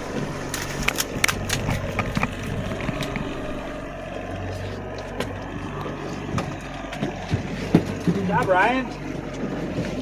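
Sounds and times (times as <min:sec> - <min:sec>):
boat engine running: 0:00.0 - 0:10.0
sharp clicks and knocks: 0:00.5 - 0:03.4.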